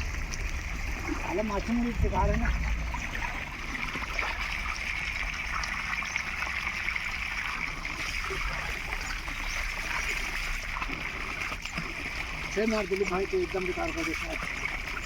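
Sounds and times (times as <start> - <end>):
water trickling: 0.0 - 15.0.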